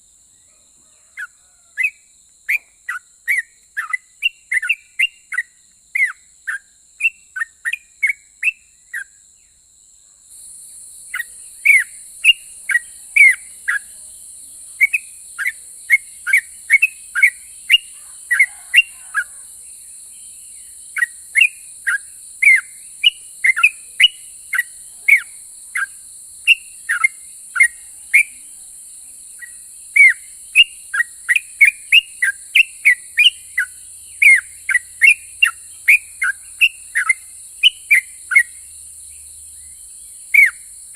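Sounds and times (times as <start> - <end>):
bird singing whistled notes: 1.2 - 9.6, 11.0 - 28.6, 29.3 - 40.9.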